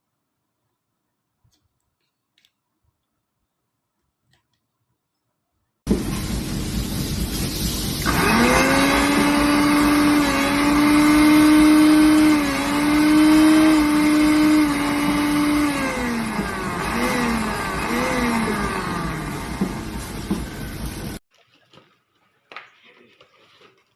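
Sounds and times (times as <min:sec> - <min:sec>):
mixer grinder motor whining: 0:07.8 - 0:21.2.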